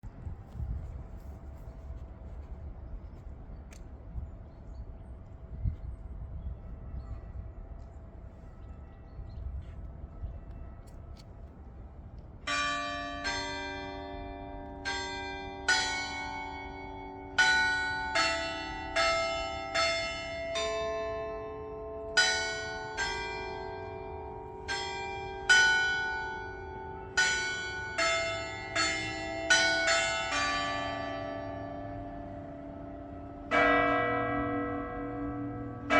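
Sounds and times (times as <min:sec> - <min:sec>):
church bells ringing: 0:12.4 - 0:35.9.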